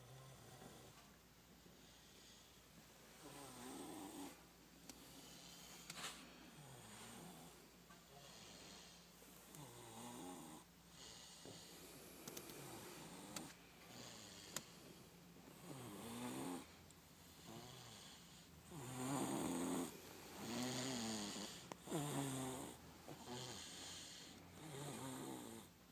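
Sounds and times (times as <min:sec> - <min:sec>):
person snoring loudly: 0:17.4 - 0:25.7.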